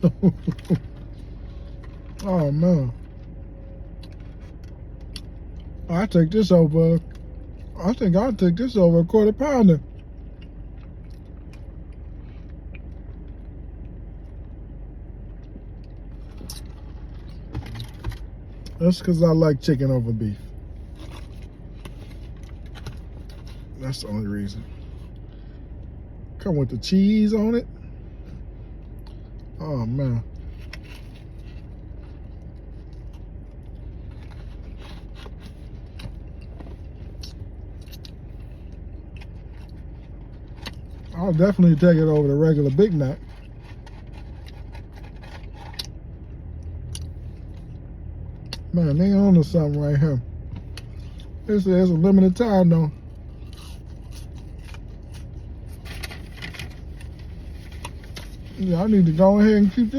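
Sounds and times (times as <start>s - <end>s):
person chewing a sandwich: 0.0s - 2.3s, 2.9s - 5.9s, 9.8s - 18.8s, 20.4s - 23.8s, 30.3s - 41.2s, 43.2s - 47.8s, 53.0s - 58.6s
car engine humming: 0.0s - 59.9s.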